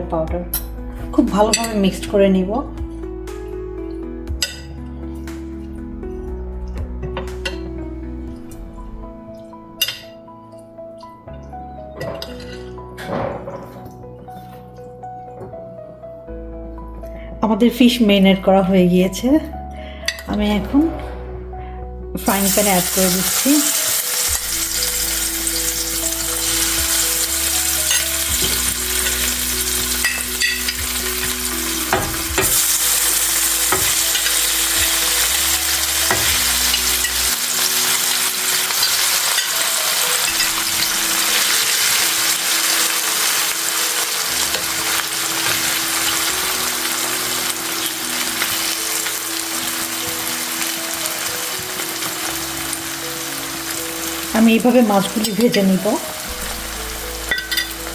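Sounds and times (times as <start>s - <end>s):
fish sizzling in hot oil: 22.2s - 57.9s.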